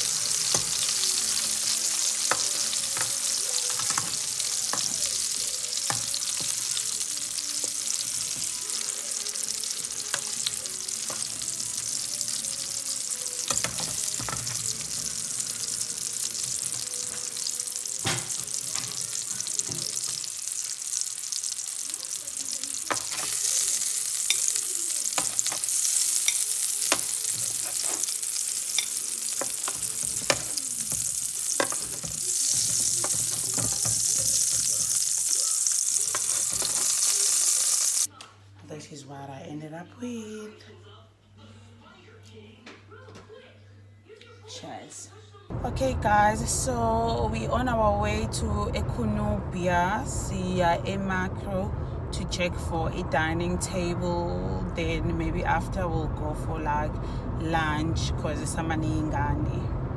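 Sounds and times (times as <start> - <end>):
food sizzling in a pan: 0.0 - 38.1.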